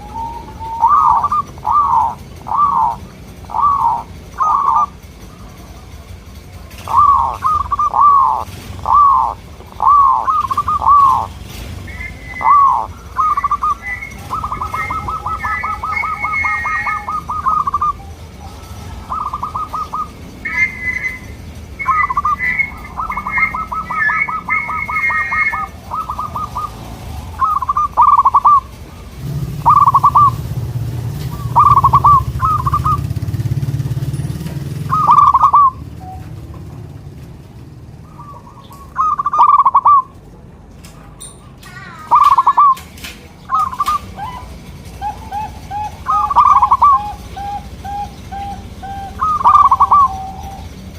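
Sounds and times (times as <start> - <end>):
doves cooing: 0.0 - 50.9.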